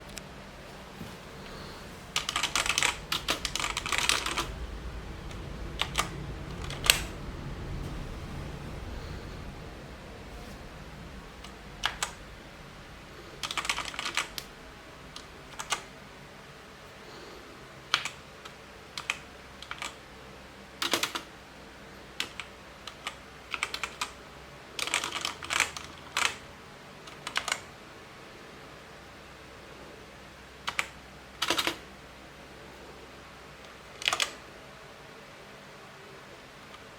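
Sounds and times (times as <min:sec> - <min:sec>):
mechanical keyboard typing: 0:02.2 - 0:04.5, 0:13.4 - 0:14.5, 0:20.8 - 0:21.3, 0:24.8 - 0:26.4, 0:30.7 - 0:31.8.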